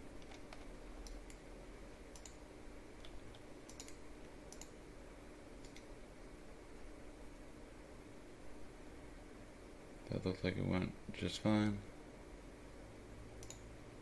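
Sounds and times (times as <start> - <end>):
faint steady hum: 0.0 - 14.0
keyboard keystrokes: 3.0 - 4.7.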